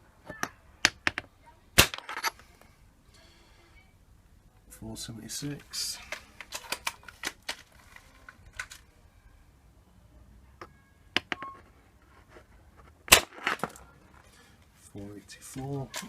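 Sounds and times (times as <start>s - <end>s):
airsoft rifle shot: 1.8s - 2.3s, 13.1s - 13.5s.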